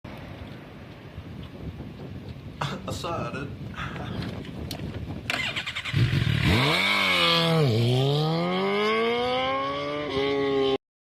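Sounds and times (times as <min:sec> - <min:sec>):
motorcycle engine accelerating: 0:05.2 - 0:10.8.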